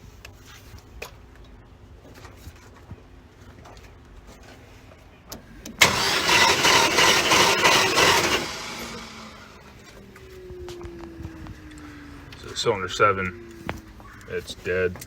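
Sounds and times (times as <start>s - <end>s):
engine cranking on starter: 5.8s - 9.9s.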